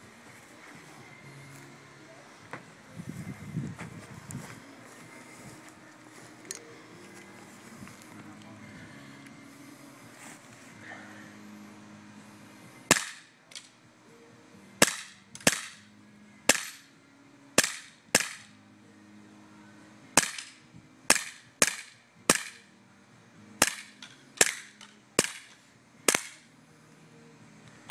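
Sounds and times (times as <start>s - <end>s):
bb pistol shots: 12.9s - 13.7s, 14.8s - 15.8s, 16.5s - 16.9s, 17.6s - 18.5s, 20.2s - 22.6s, 23.6s - 25.5s, 26.1s - 26.4s.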